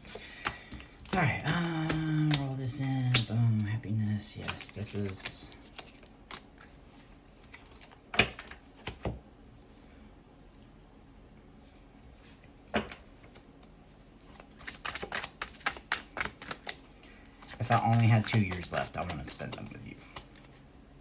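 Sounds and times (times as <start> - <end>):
cards being shuffled: 0.0 - 9.8, 14.2 - 20.6.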